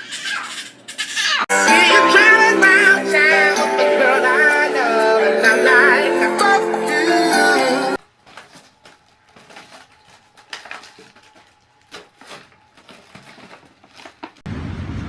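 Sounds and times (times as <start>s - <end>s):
song playing: 1.5s - 8.0s.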